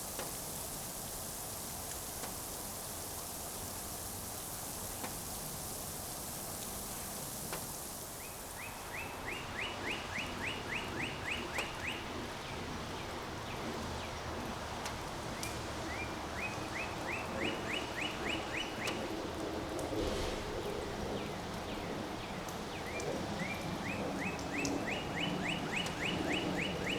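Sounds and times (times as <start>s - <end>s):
rain and wind hiss: 0.0s - 26.9s
songbird singing: 8.2s - 12.1s, 15.9s - 19.0s, 22.2s - 26.9s.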